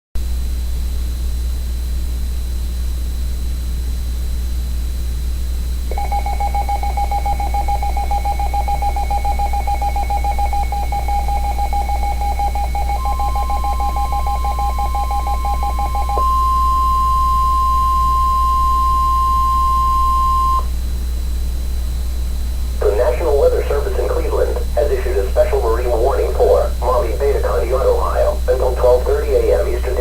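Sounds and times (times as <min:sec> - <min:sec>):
low hum and hiss: 0:00.2 - 0:30.0
faint high steady tone: 0:05.9 - 0:20.7.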